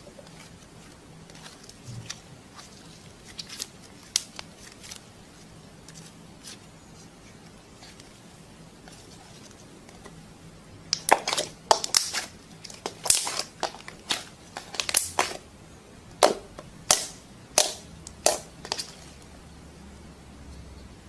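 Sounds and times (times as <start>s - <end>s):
slime popping and clicking: 10.9s - 15.4s, 16.2s - 18.9s.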